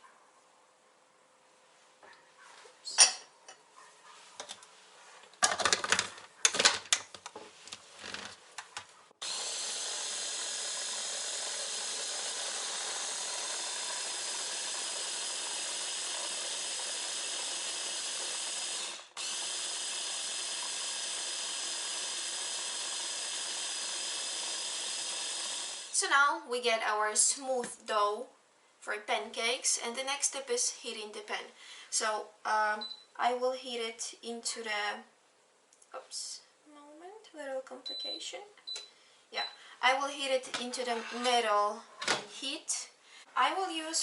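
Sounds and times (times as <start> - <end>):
blender motor running: 9.2 - 26.0.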